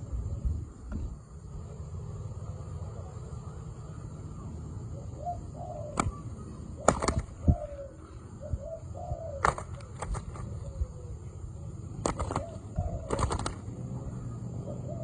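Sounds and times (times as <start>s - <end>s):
doves cooing: 0.0s - 15.0s
sharp snaps of wing flaps: 6.0s - 6.2s, 6.8s - 7.6s, 9.4s - 10.6s, 12.0s - 13.7s.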